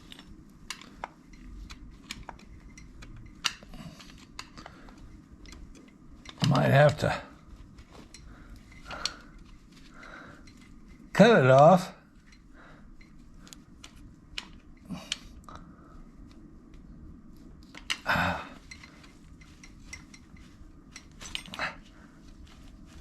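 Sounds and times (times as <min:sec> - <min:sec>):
clicks and taps of tools: 0:00.1 - 0:06.6.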